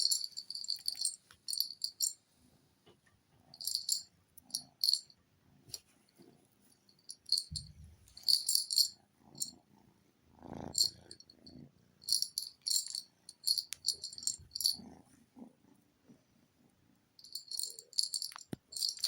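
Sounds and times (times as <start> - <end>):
rattle ball toy rattling: 0.0 - 2.2, 3.6 - 5.1, 7.1 - 9.5, 12.0 - 14.9, 17.2 - 19.0.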